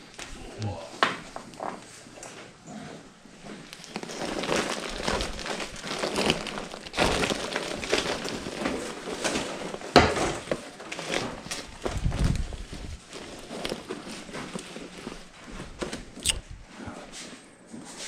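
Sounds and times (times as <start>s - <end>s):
rustling and crinkling handling: 0.0s - 18.0s.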